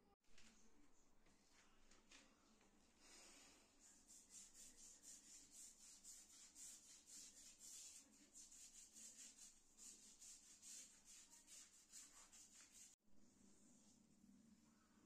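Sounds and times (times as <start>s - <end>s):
brush scrubbing: 3.8s - 13.0s.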